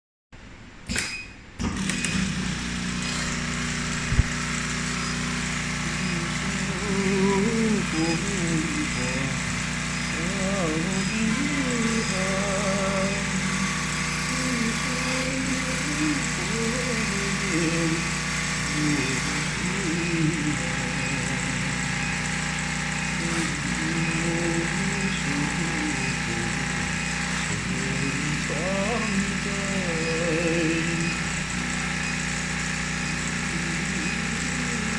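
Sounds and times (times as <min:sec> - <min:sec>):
sharp click: 0:00.8 - 0:02.3
sewing machine running: 0:01.6 - 0:34.9.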